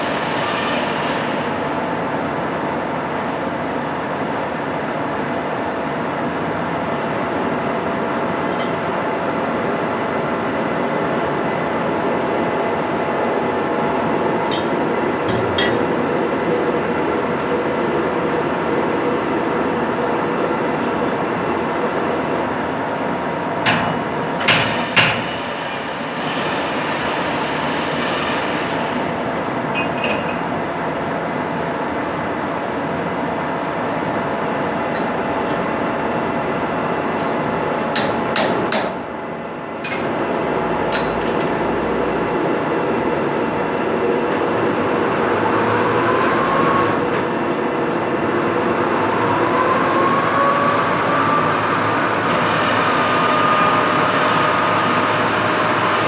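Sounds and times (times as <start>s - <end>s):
machine tool running: 24.4s - 29.2s, 39.9s - 56.0s.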